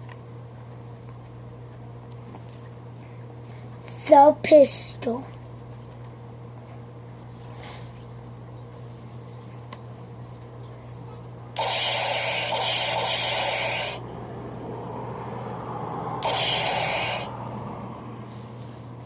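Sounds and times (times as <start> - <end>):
toy pistol electronic sound effect: 11.6 - 14.0, 16.2 - 17.3.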